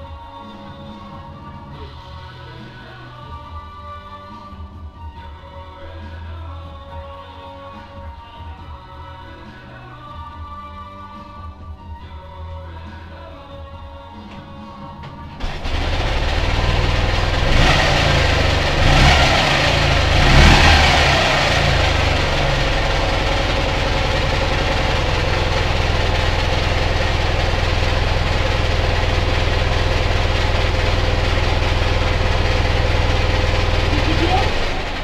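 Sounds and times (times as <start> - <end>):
motorcycle engine revving and idling: 15.4 - 35.0.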